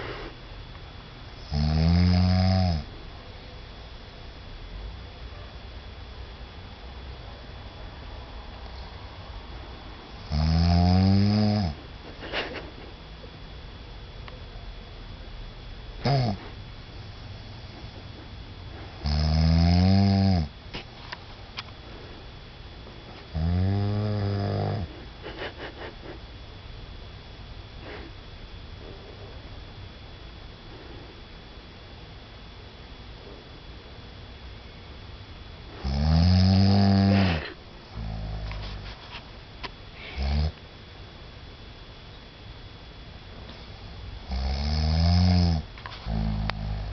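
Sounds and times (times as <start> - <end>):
man snorting: 0.0 - 0.4, 10.2 - 13.0, 16.0 - 16.6, 17.7 - 20.5, 23.3 - 26.3, 27.8 - 28.2, 35.7 - 39.0, 40.0 - 40.6, 44.3 - 46.9
man snoring: 1.4 - 2.9, 10.2 - 11.8, 16.0 - 16.5, 19.0 - 20.5, 23.3 - 24.9, 35.8 - 38.6, 40.0 - 40.6, 44.2 - 46.9.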